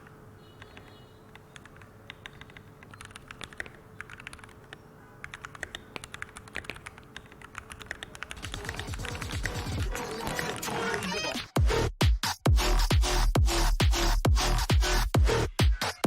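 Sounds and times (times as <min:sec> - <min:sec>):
mechanical keyboard typing: 0:00.0 - 0:11.2.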